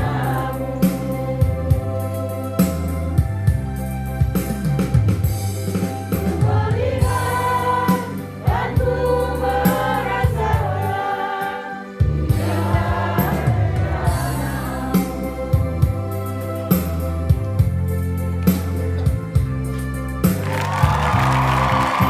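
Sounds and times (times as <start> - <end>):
congregation singing praise song: 0.0 - 3.2, 6.1 - 17.2
electronic keyboard with beat: 0.0 - 9.4.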